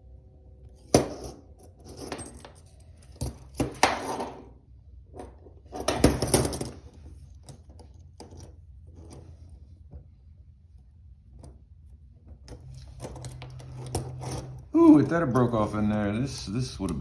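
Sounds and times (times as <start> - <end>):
handcuffs clinking and jangling: 0.8 - 4.1, 5.2 - 9.3, 12.4 - 17.0.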